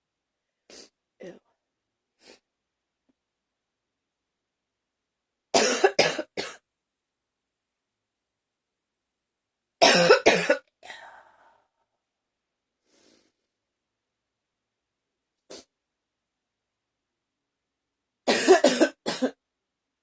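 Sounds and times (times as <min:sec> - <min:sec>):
woman coughing: 0:05.6 - 0:06.6, 0:09.8 - 0:10.7, 0:18.3 - 0:19.4.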